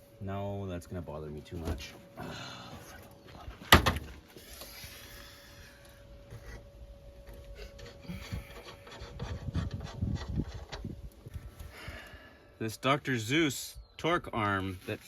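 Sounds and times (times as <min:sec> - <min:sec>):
faint steady hum: 0:00.0 - 0:15.0
metal scraping: 0:07.6 - 0:11.0
irregular knocks and rubbing: 0:07.7 - 0:11.0.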